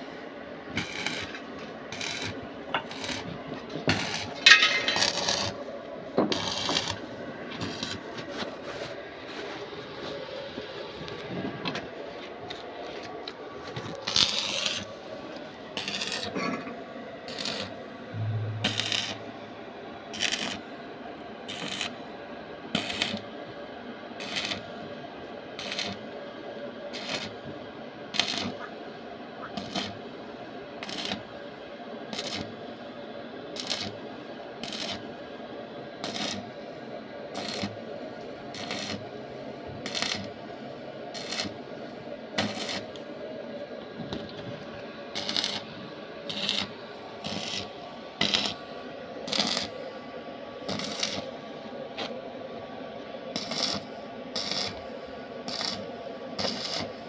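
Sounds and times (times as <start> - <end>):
background hum: 15.8 - 20.6
sharp metallic strikes: 18.2 - 19.4.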